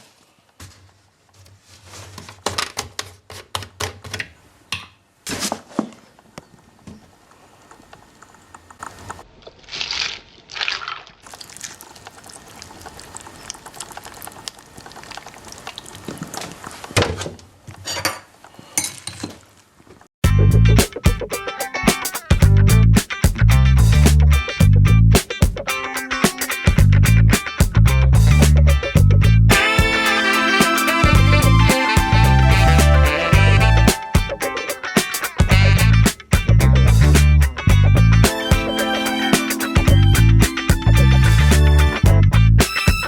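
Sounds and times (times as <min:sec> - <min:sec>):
pouring into a dish: 0:10.6 - 0:16.1.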